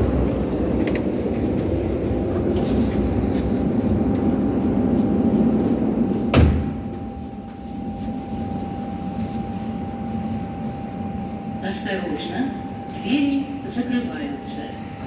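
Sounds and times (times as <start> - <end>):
low rumble inside metro car: 0.0 - 15.0
loud clunk: 6.3 - 7.0.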